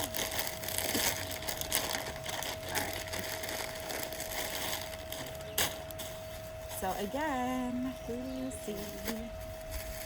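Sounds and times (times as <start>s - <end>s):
plastic bag crinkling and tearing: 0.0s - 6.6s, 8.7s - 10.0s
faint high hum: 0.0s - 10.0s.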